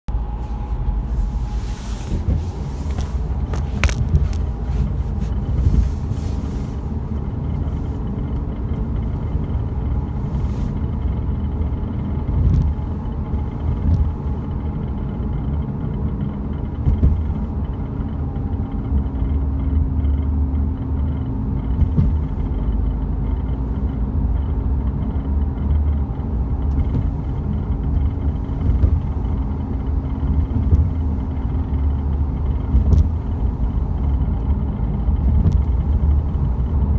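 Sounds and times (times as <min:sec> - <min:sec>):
road and engine rumble: 0:00.0 - 0:36.9
steady hum: 0:00.1 - 0:14.1
rattling clicks in car: 0:02.1 - 0:36.9.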